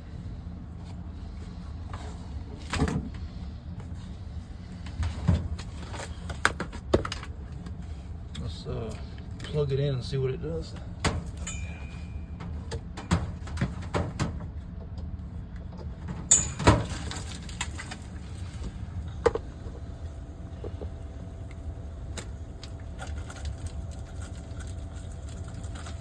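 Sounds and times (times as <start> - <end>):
sump pump humming: 10.8 - 14.9, 15.7 - 26.0.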